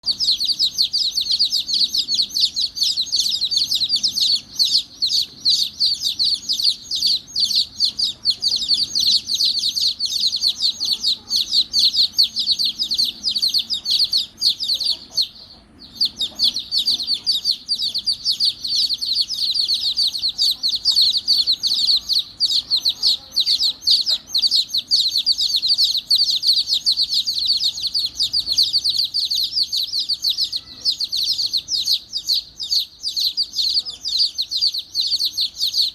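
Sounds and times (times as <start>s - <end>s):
baby chicks peeping: 0.0s - 35.9s.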